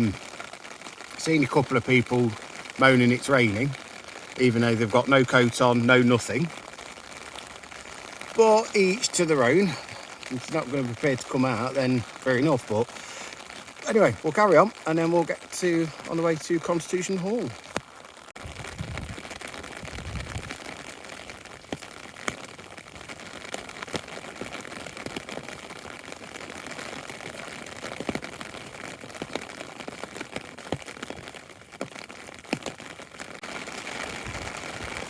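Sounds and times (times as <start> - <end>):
heavy rain hissing: 0.0 - 24.0, 33.4 - 35.0
raindrops tapping on umbrella: 0.0 - 35.0.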